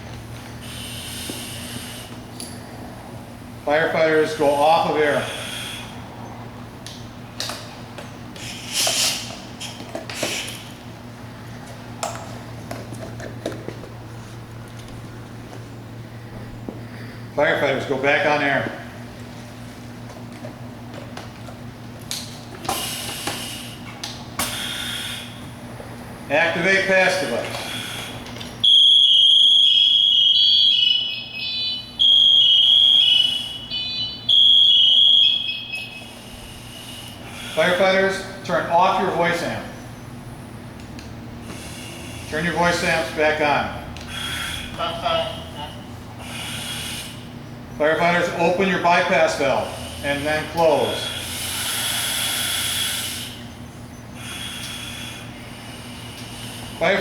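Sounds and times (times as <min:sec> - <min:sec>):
steady low hum: 0:00.0 - 0:57.0
short hisses of air: 0:08.4 - 0:10.6
shrill safety alarm tones: 0:26.5 - 0:39.7.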